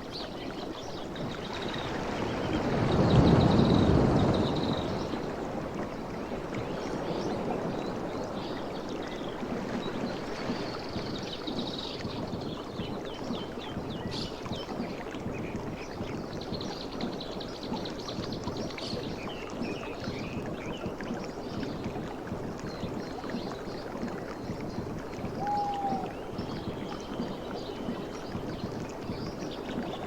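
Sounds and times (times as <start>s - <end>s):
sea water lapping: 0.0s - 30.0s
small birds chirping: 22.7s - 30.0s.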